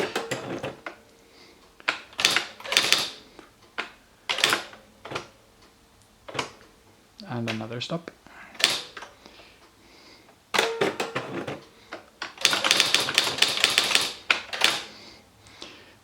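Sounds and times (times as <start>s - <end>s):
electric typewriter strikes: 0.0s - 1.0s, 1.9s - 3.2s, 4.3s - 5.4s, 8.6s - 9.1s, 10.5s - 11.6s, 12.2s - 15.0s.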